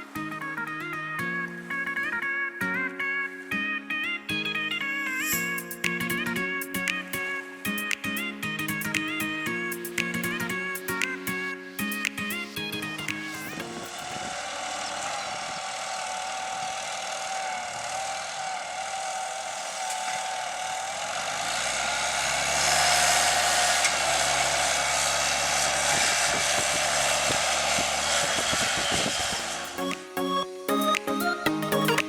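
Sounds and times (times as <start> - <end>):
wavering whine: 11.3 - 32.0
tractor diesel engine running: 14.3 - 29.7.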